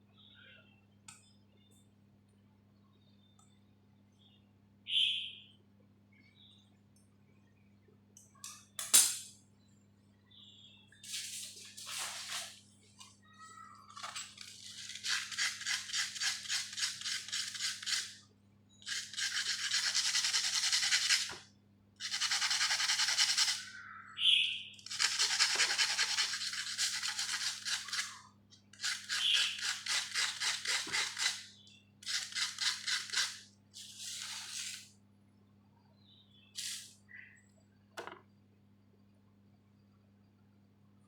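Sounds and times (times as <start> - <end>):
scraping strokes on small part: 24.9 - 28.2, 28.8 - 34.8.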